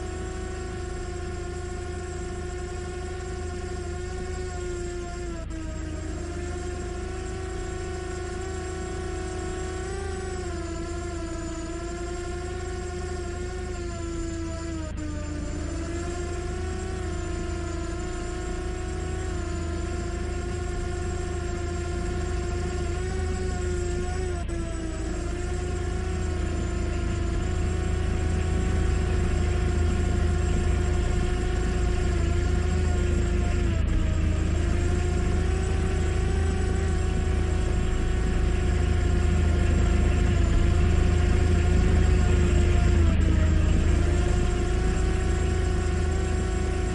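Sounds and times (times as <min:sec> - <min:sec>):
drone propellers whirring: 0:00.0 - 0:46.9
low rumble: 0:33.4 - 0:46.5.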